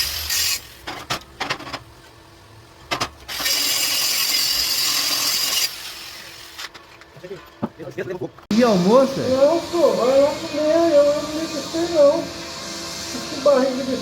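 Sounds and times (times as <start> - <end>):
welding arc hissing: 0.0 - 0.8, 8.6 - 14.0.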